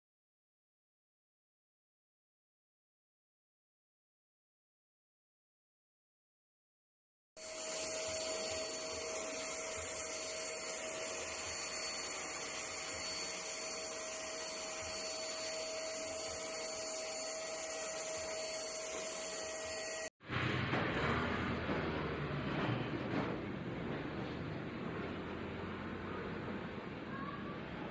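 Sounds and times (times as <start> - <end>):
handheld vacuum cleaner running: 7.4 - 20.1.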